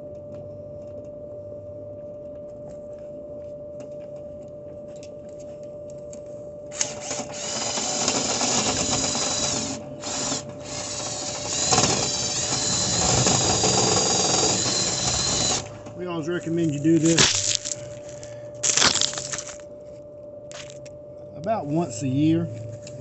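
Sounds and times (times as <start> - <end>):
faint steady hum: 0.0 - 23.0
power drill motor whine: 6.6 - 19.7.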